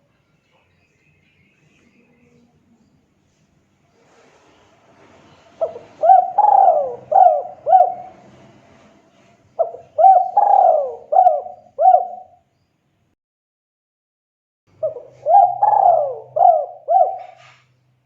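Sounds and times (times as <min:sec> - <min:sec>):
dove cooing: 0:05.5 - 0:08.2, 0:09.6 - 0:12.4, 0:14.8 - 0:17.7.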